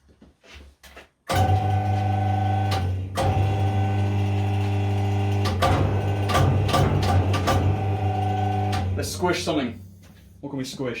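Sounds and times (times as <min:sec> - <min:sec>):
hydraulic press motor humming: 0:01.3 - 0:09.1.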